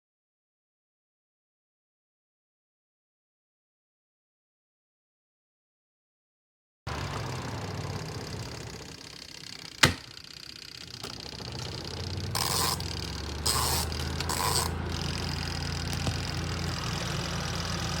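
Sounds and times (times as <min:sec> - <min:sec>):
washing machine motor humming: 0:06.9 - 0:18.0
sharp click: 0:09.8 - 0:10.2.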